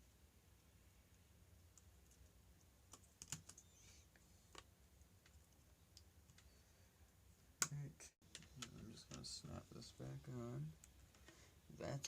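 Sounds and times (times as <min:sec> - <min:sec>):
faint clicks and taps: 0:01.1 - 0:06.6, 0:07.6 - 0:09.3.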